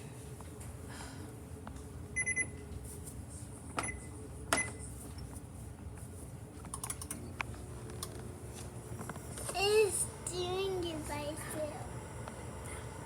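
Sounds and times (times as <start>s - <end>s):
microwave oven humming: 0.0s - 13.0s
microwave keypad beeps: 2.2s - 2.6s, 3.8s - 4.8s.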